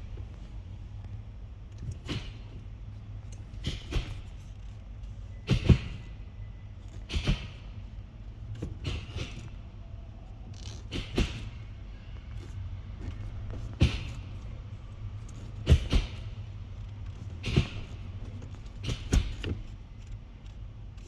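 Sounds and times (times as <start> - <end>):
low steady hum: 0.0 - 21.0
gear lever clicking: 6.8 - 21.0.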